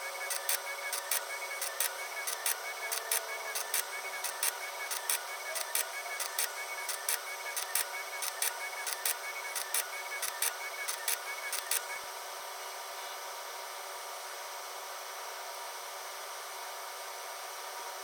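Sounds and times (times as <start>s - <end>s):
motors whirring: 0.2s - 11.8s
sharp mechanical clicks: 0.3s - 11.8s.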